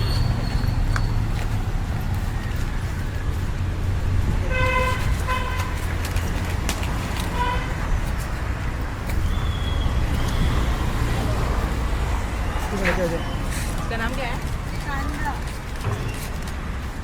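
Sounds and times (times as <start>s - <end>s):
street traffic rumble: 0.0s - 17.0s
vehicle horn honking: 4.4s - 5.8s, 7.3s - 7.8s.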